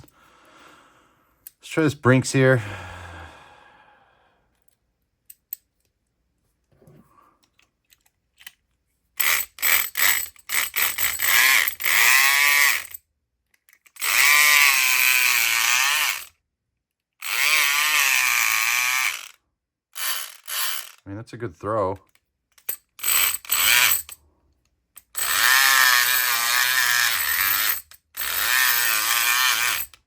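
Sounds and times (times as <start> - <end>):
electric pick gun buzzing: 17.2 - 19.4, 25.2 - 30.0.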